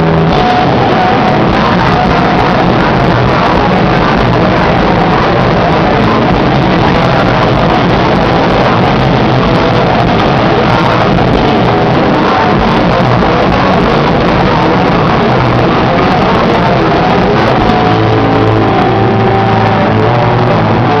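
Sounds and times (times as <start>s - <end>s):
rock band playing live: 0.0s - 21.0s.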